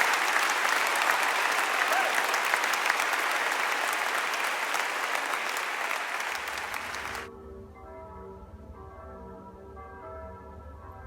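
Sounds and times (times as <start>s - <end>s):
audience applauding: 0.0s - 7.3s.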